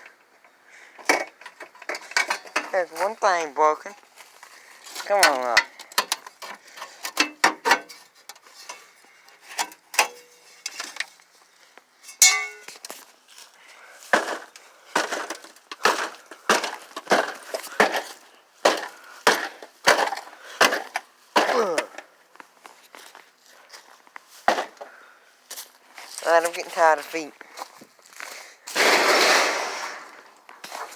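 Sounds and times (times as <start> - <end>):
kicks and stomps on microwave: 14.2 - 22.0, 24.5 - 24.9
metal scraping: 28.7 - 30.2.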